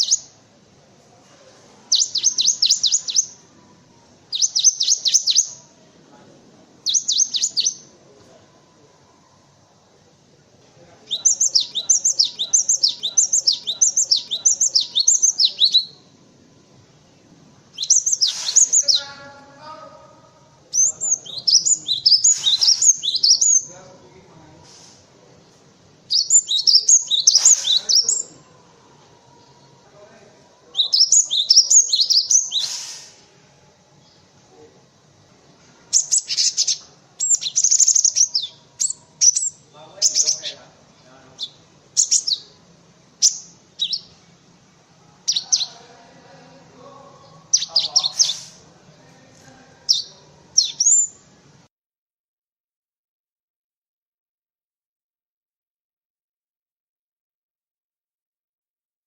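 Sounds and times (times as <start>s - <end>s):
bird singing down-slurred phrases: 1.9s - 9.3s, 10.8s - 16.2s, 17.7s - 33.2s, 35.9s - 44.5s, 45.1s - 51.3s.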